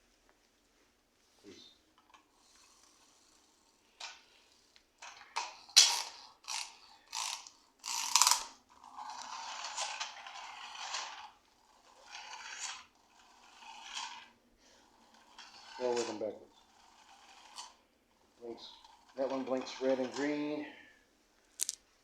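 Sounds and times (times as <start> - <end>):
toy car gear whir: 2.0 - 20.7
toy car ratcheting whirs: 5.0 - 20.6.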